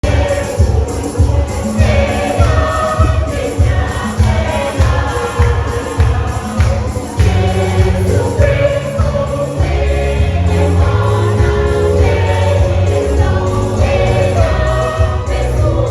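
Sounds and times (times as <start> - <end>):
children's choir singing gospel: 0.0 - 15.9
steady low beat: 0.0 - 15.9.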